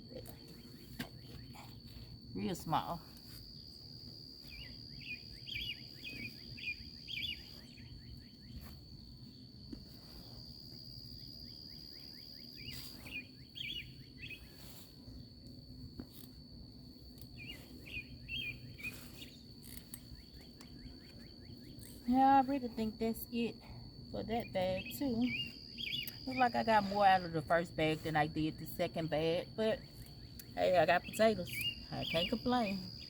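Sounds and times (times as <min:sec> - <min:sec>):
insect trilling: 0:04.4 - 0:08.8, 0:10.9 - 0:14.8, 0:17.0 - 0:23.5, 0:24.1 - 0:33.0
bird chirping: 0:04.5 - 0:08.5, 0:12.6 - 0:14.4, 0:17.4 - 0:21.9, 0:25.3 - 0:26.2.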